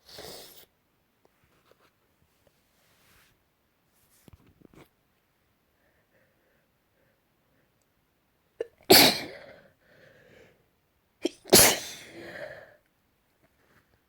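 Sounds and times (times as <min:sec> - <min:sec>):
person sneezing: 0:08.6 - 0:09.6, 0:11.2 - 0:12.6.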